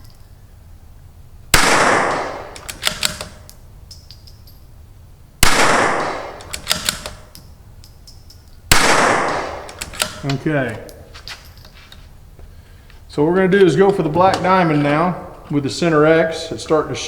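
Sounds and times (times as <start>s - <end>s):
rifle shots: 1.5s - 3.4s, 5.4s - 7.3s, 8.7s - 10.4s
metallic rifle bolt clicks: 2.4s - 4.6s, 6.0s - 8.6s, 9.3s - 12.0s.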